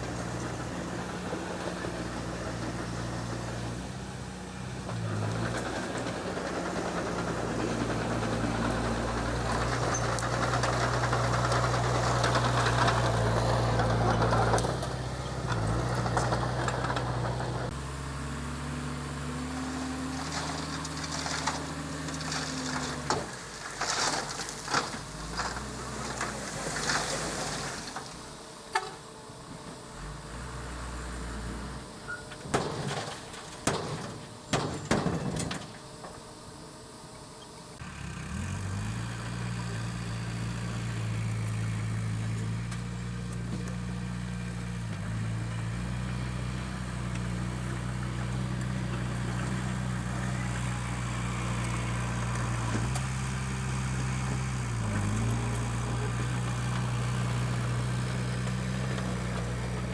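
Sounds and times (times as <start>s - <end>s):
diesel engine running: 0.0s - 59.9s
sharp knocks and clatter: 32.4s - 35.8s.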